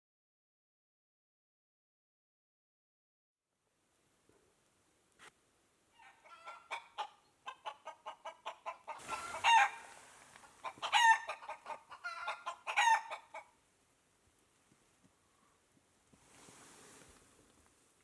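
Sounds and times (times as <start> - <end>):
hen squawking: 6.0 - 13.5
chicken clucking: 6.0 - 13.6.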